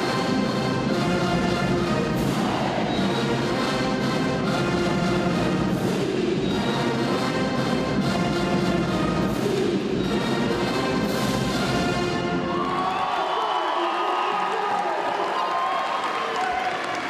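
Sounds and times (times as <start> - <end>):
brass and drums playing music: 0.0 - 12.5.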